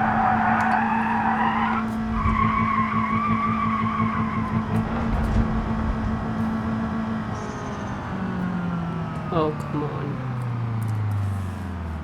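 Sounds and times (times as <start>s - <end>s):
wavering high-pitched squeal: 0.0s - 8.3s
car engine cranking: 0.0s - 12.0s.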